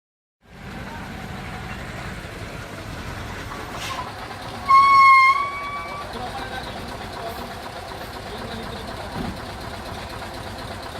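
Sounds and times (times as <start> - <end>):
vehicle engine rumbling: 0.4 - 10.9
horn blast: 4.6 - 6.0.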